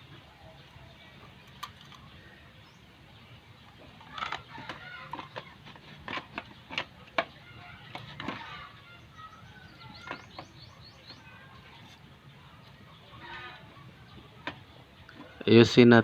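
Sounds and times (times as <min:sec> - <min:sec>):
chickens clucking: 0:03.7 - 0:15.6.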